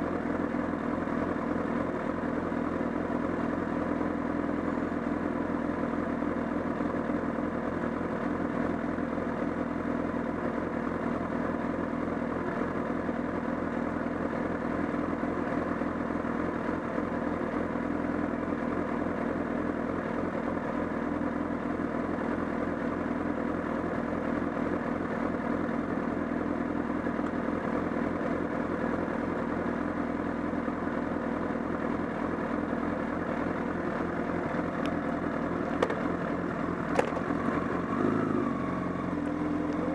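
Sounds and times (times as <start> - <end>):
motorcycle engine idling: 0.0 - 39.9
flapping clattering engine noise: 35.6 - 36.2, 36.9 - 37.4.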